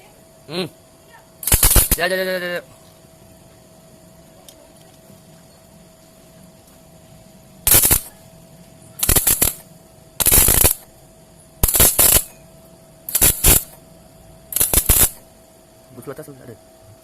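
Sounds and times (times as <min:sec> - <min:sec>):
welding arc crackling: 0:01.4 - 0:02.5, 0:07.6 - 0:08.2, 0:09.0 - 0:11.0, 0:11.6 - 0:12.4, 0:13.1 - 0:13.8, 0:14.5 - 0:15.3.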